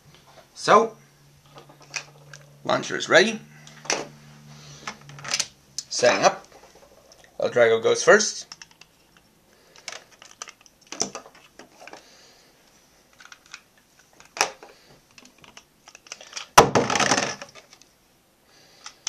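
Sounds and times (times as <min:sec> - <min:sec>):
plastic clicks and rattles: 0:08.4 - 0:12.0, 0:13.1 - 0:17.9.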